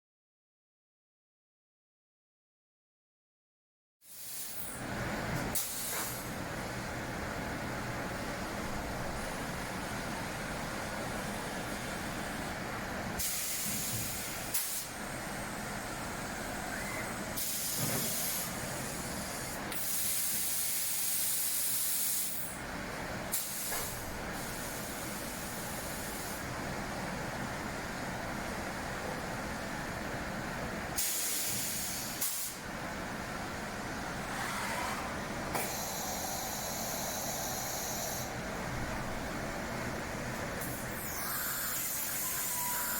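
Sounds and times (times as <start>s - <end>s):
compressed air hissing: 13.2s - 14.9s, 31.0s - 32.6s.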